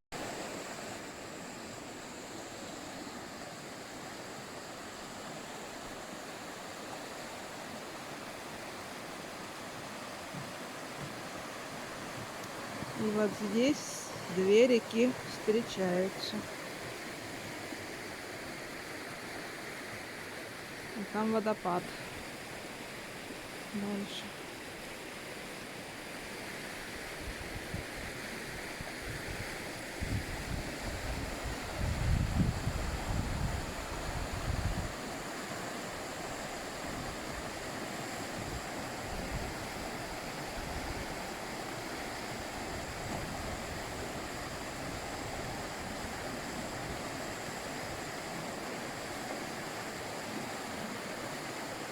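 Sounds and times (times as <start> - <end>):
wind buffeting microphone: 29.0 - 35.0.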